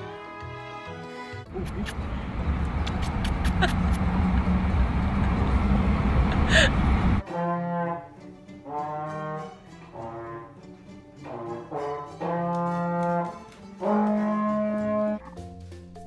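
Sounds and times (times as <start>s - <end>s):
slow brass-like tune: 0.0s - 1.4s, 7.2s - 15.4s.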